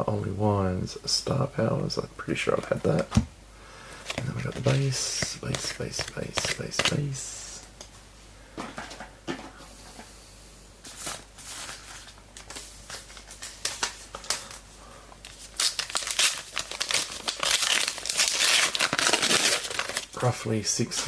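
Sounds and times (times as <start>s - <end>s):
card pack wrapper crinkling: 4.0s - 7.2s, 10.9s - 14.6s, 15.2s - 20.3s.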